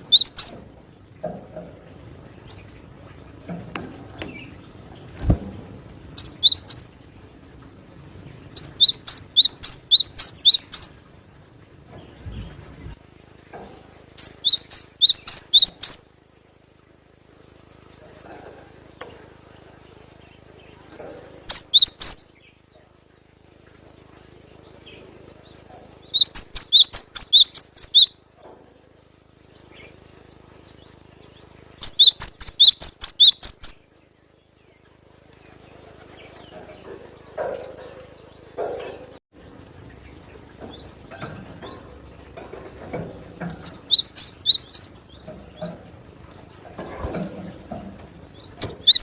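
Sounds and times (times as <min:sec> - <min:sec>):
bird singing sharp high notes: 0:00.0 - 0:00.6, 0:06.2 - 0:06.8, 0:26.1 - 0:28.1, 0:31.8 - 0:33.8, 0:43.6 - 0:45.0.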